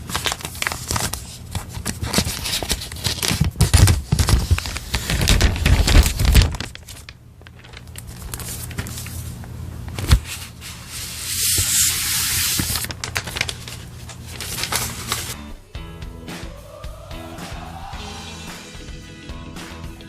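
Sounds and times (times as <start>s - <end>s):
packaging crinkling and tearing: 0.0s - 9.2s, 11.5s - 15.4s.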